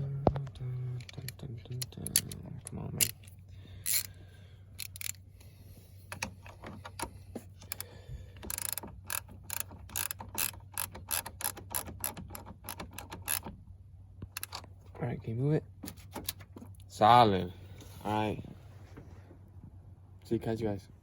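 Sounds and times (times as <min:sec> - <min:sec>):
ratchet wrench clicking: 0:03.0 - 0:04.2, 0:04.8 - 0:05.2, 0:07.6 - 0:13.5, 0:14.3 - 0:14.6.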